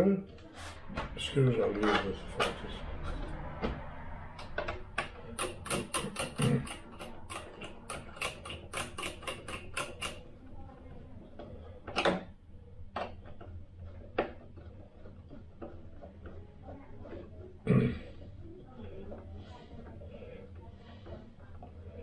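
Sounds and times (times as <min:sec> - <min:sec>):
small hard parts clicking: 0:01.6 - 0:10.2.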